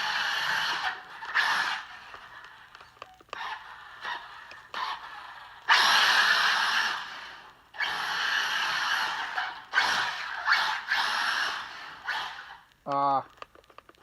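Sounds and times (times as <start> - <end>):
electric rc truck driving: 0.0 - 12.6.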